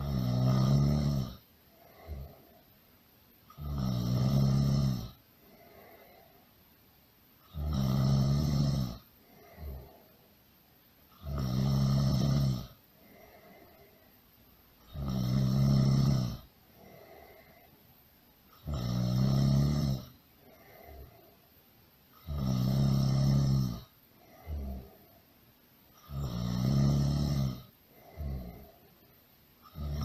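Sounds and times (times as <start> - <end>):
loud snoring: 0.0 - 2.5, 3.5 - 6.2, 7.4 - 10.1, 11.1 - 13.9, 14.8 - 17.6, 18.6 - 21.2, 22.2 - 25.0, 26.0 - 28.9, 29.6 - 30.0
soft breaths: 0.0 - 7.7, 8.3 - 30.0.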